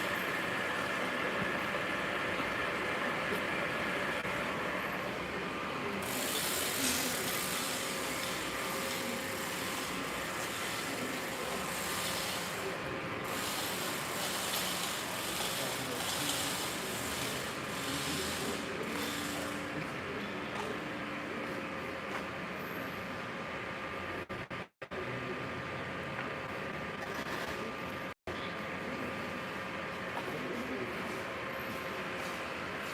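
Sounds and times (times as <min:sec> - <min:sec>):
workshop machinery clattering: 0:06.0 - 0:19.8.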